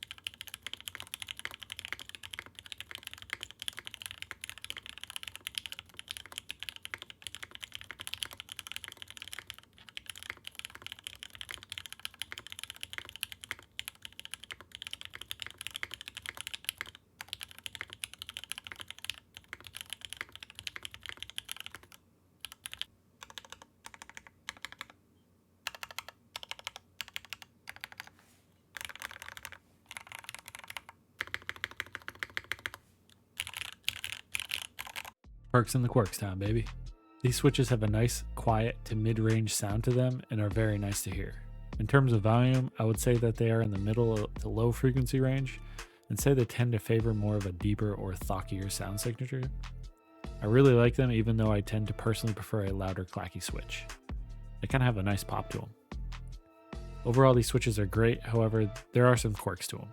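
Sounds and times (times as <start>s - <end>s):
typing on mechanical keyboard: 0.0s - 25.0s, 25.6s - 28.2s, 28.8s - 32.8s, 33.4s - 35.2s.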